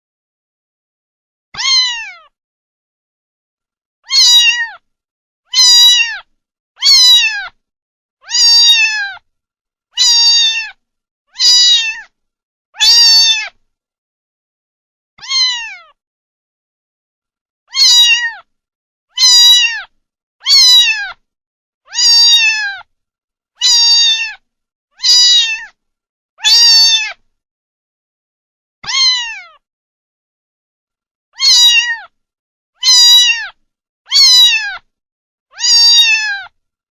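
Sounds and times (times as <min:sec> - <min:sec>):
kitten meowing: 0:01.6 - 0:02.3, 0:04.0 - 0:04.8, 0:05.5 - 0:07.6, 0:08.2 - 0:09.2, 0:10.0 - 0:12.1, 0:12.8 - 0:13.6, 0:15.2 - 0:16.0, 0:17.7 - 0:18.5, 0:19.1 - 0:21.2, 0:21.9 - 0:22.9, 0:23.6 - 0:24.4, 0:25.0 - 0:25.8, 0:26.4 - 0:27.2, 0:28.8 - 0:29.6, 0:31.4 - 0:32.1, 0:32.8 - 0:34.9, 0:35.5 - 0:36.6.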